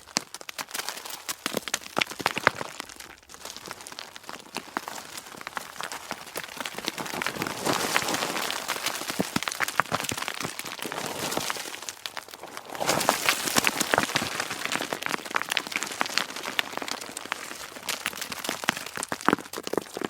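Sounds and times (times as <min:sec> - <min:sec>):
rocks clattering down slope: 0:00.0 - 0:20.0.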